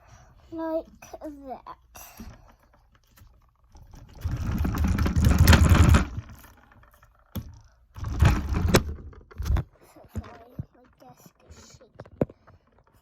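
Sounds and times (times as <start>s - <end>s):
desk rattling and thumping: 3.7s - 10.8s.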